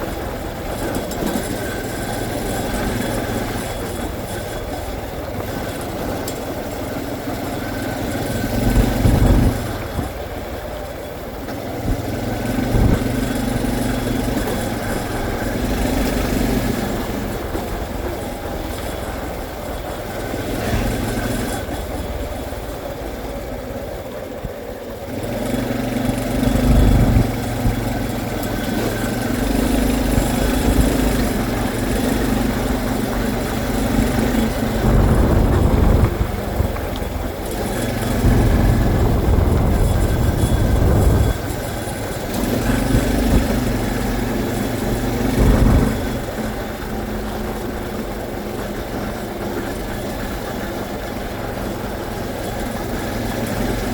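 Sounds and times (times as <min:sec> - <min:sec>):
motorcycle engine running: 0:00.0 - 0:53.9
wind on microphone: 0:07.9 - 0:10.8, 0:11.8 - 0:24.8, 0:26.1 - 0:48.4.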